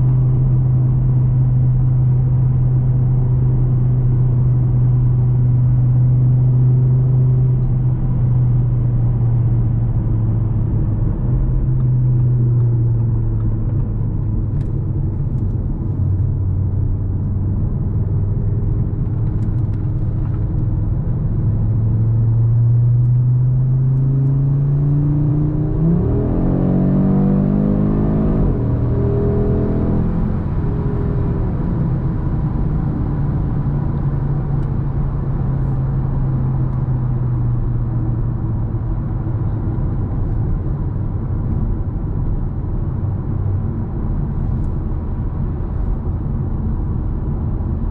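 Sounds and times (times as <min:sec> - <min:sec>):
car engine revving: 0:20.9 - 0:41.7.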